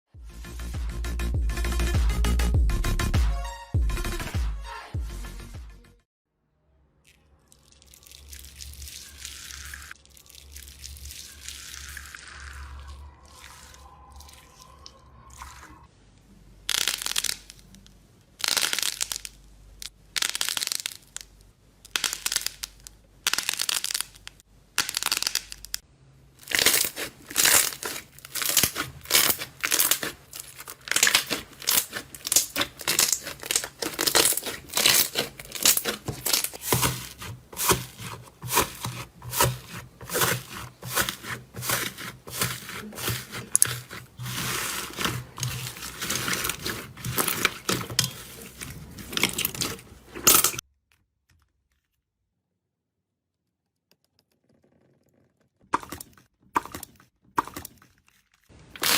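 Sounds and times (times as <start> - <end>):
slime crackling when squeezed: 26.4 - 49.8.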